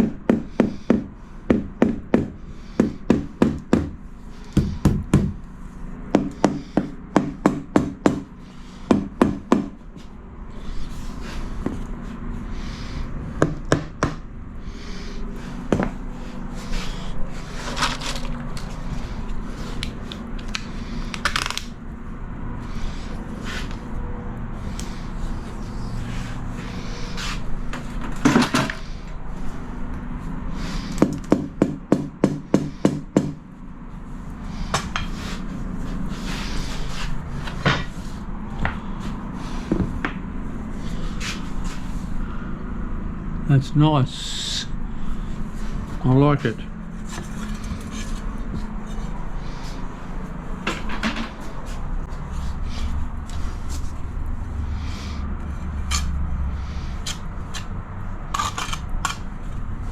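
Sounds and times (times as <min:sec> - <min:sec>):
tiles tapped sharp knocks: 0:00.0 - 0:04.0, 0:04.6 - 0:05.4, 0:06.2 - 0:08.3, 0:31.0 - 0:33.4.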